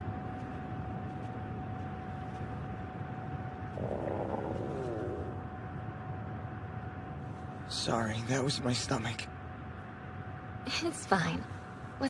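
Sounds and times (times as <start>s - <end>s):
stomach growling: 3.7s - 5.4s.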